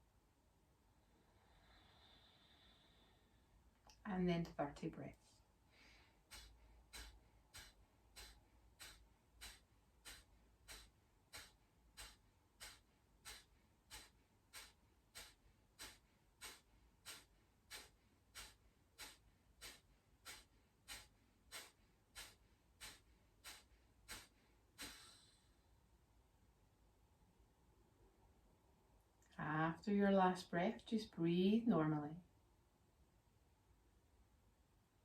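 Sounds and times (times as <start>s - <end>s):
forceful nasal exhalations: 1.1s - 3.5s, 5.7s - 25.8s.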